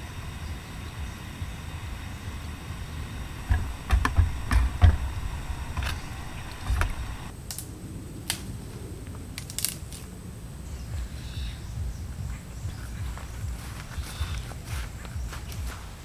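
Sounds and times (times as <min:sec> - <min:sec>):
cooking gear clicks and knocks: 0:03.2 - 0:07.6, 0:09.4 - 0:10.1.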